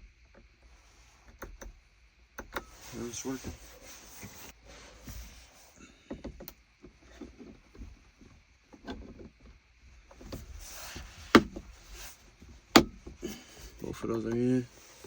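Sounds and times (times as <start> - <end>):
plastic trim clicks and knocks: 12.7 - 13.1.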